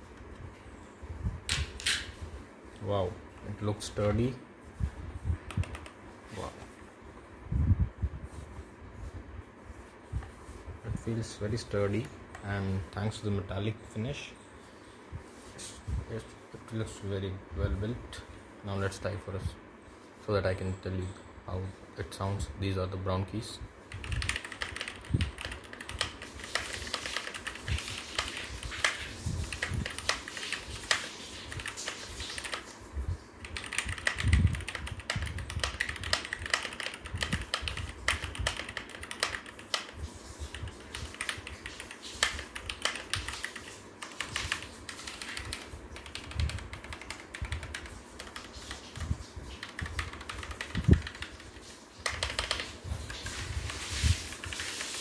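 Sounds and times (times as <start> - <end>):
mechanical keyboard key clacks: 33.5 - 39.9, 49.6 - 51.4, 52.0 - 52.7.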